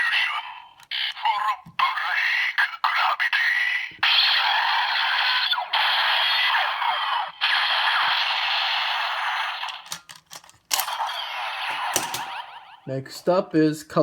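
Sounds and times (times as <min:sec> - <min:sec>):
toy electronic blast effect: 0:04.0 - 0:10.0, 0:10.7 - 0:12.9
sharp clicks: 0:09.6 - 0:12.3.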